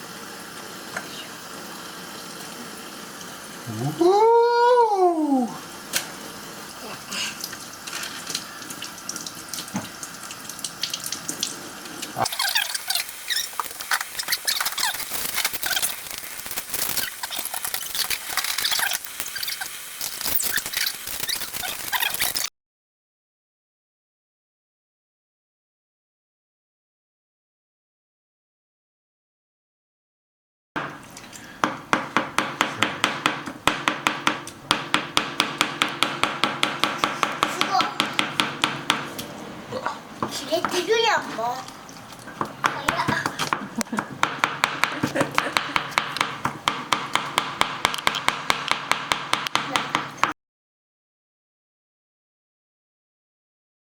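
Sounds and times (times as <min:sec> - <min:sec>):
tap water running into sink: 0:05.7 - 0:15.0
knife chopping on cutting board: 0:31.6 - 0:39.2, 0:42.4 - 0:50.3.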